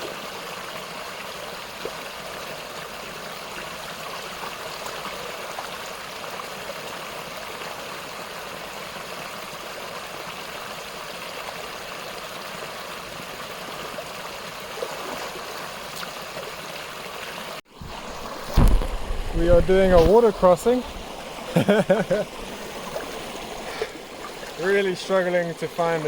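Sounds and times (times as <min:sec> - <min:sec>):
stream water rushing: 0:00.0 - 0:26.0
loud low thump: 0:18.4 - 0:20.4.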